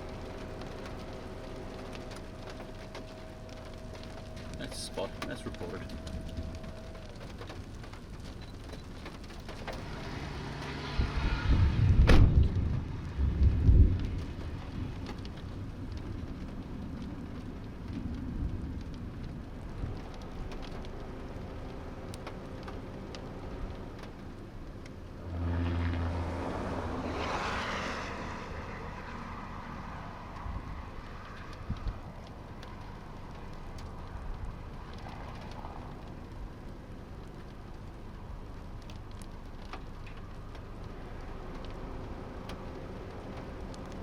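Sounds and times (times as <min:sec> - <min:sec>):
vehicle engine passing: 0:00.0 - 0:08.2, 0:09.7 - 0:15.1, 0:25.1 - 0:36.1
rain hiss: 0:00.0 - 0:44.0
thunder rumbles and crack: 0:00.0 - 0:44.0.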